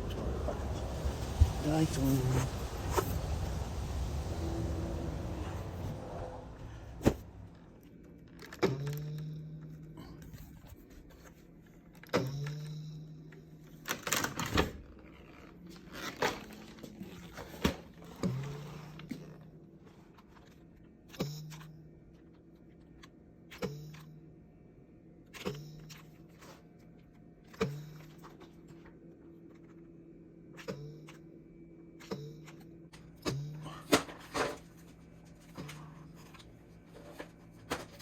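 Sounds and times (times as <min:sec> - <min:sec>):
vacuum parts clicking and knocking: 0:32.0 - 0:38.0.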